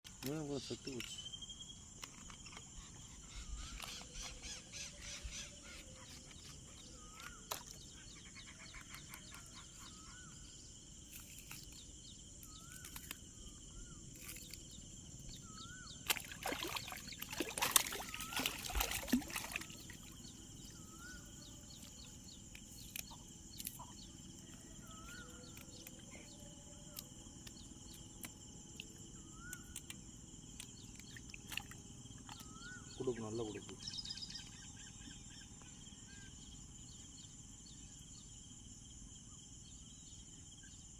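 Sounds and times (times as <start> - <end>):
crickets droning: 0.0 - 40.9
bird rising call: 15.4 - 21.4.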